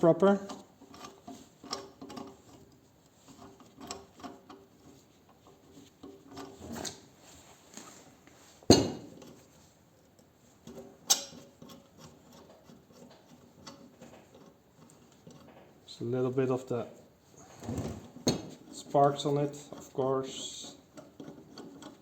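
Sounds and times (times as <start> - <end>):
sharp metallic knock: 8.7 - 9.1.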